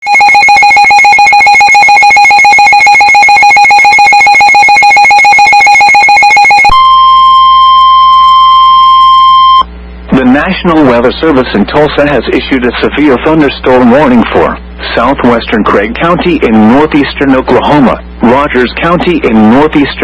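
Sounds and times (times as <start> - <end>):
steady alert tone: 0.0 - 7.6.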